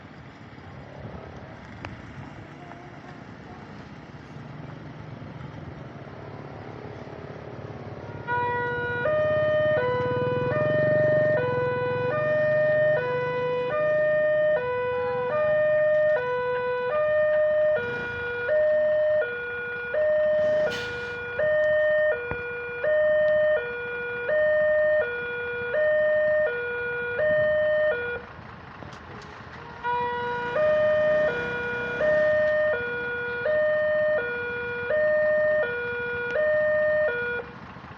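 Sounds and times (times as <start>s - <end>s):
two-tone warning siren wailing: 7.6s - 28.5s, 29.2s - 37.8s.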